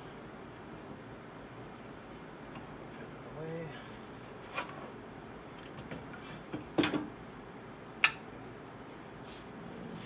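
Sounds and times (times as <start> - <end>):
steady background noise: 0.0 - 10.0
objects knocking and clattering: 5.4 - 7.1.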